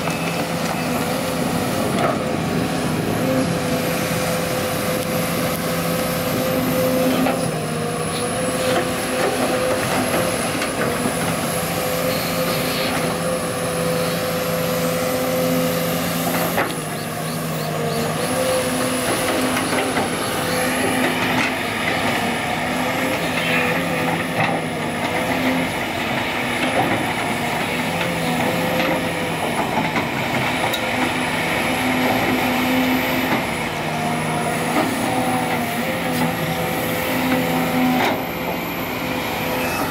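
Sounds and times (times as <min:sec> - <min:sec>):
heavy diesel machinery hum: 0:00.0 - 0:39.9.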